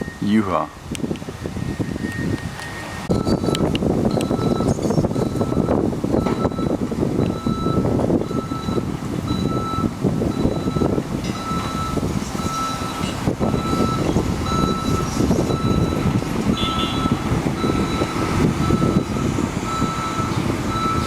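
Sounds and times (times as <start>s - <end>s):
backup alarm beeping: 0.0s - 21.0s
diesel engine running: 0.0s - 21.0s.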